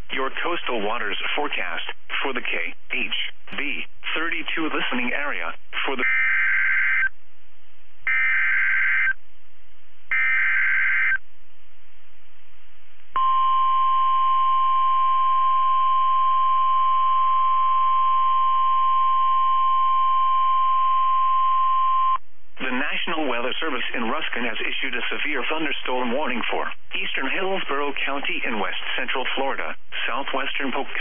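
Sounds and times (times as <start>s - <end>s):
steady warning alarm tone: 6.0s - 7.1s, 8.1s - 9.2s, 10.1s - 11.2s, 13.2s - 22.2s
buzzing data tones: 8.1s - 9.2s, 10.1s - 11.2s.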